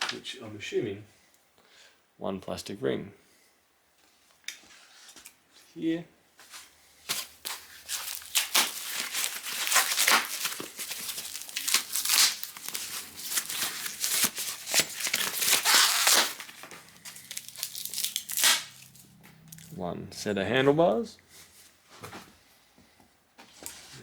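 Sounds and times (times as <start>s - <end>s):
plastic packaging crinkling and tearing: 7.1s - 19.7s.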